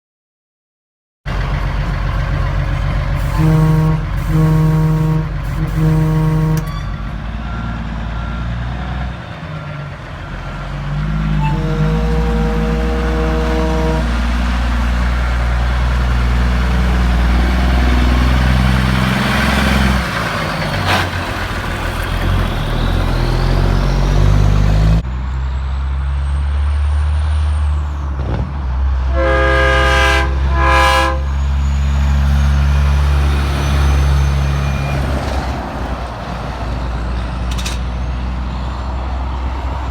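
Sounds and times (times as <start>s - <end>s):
heavy truck engines passing: 1.3s - 39.9s
road noise: 1.3s - 39.9s
chorded air horn blasts: 3.2s - 7.0s, 11.4s - 14.8s, 29.1s - 31.5s.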